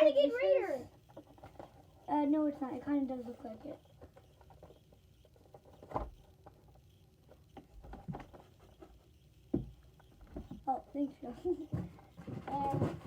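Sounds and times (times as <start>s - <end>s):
soft handling taps and knocks: 7.5s - 10.8s, 11.4s - 13.0s.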